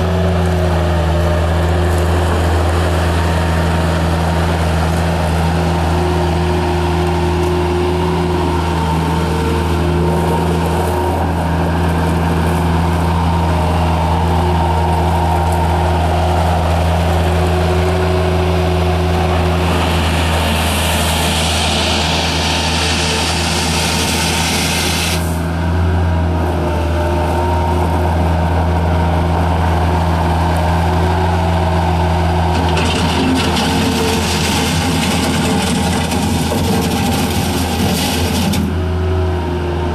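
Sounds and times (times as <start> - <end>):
diesel engine running: 0.0 - 39.9
hiss: 19.7 - 25.4.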